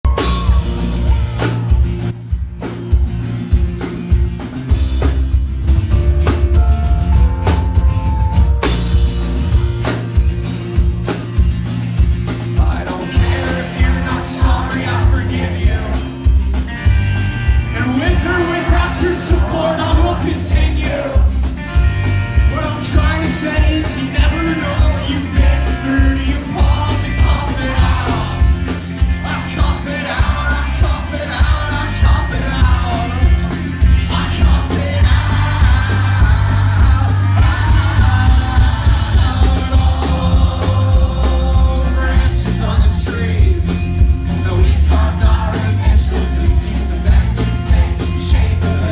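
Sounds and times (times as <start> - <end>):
live rock band playing: 0.0 - 48.9
lead vocalist singing: 12.6 - 16.5, 17.7 - 21.7, 22.4 - 48.9.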